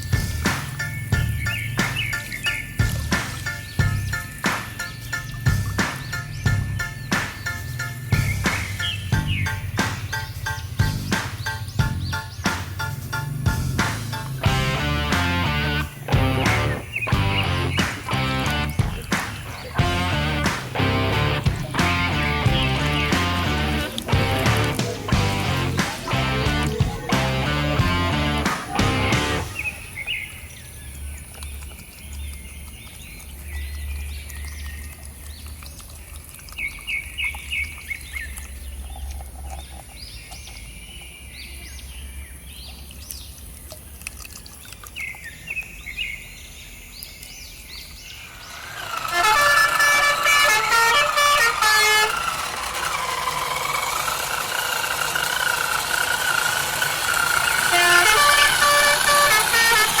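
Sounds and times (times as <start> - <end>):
bird-like chirps: 0.0 - 14.4, 28.4 - 35.8
low hum: 0.0 - 29.8
toy truck horn toots: 48.5 - 60.0.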